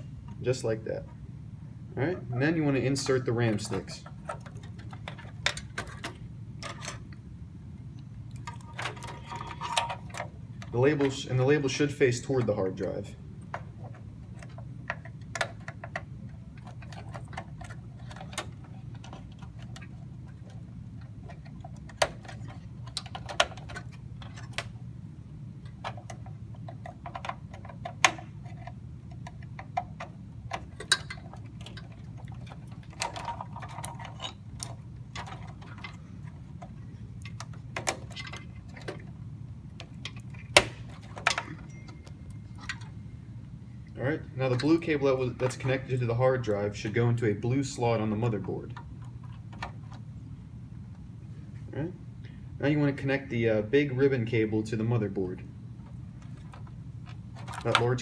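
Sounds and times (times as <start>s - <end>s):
steady low hum: 0.0s - 58.0s.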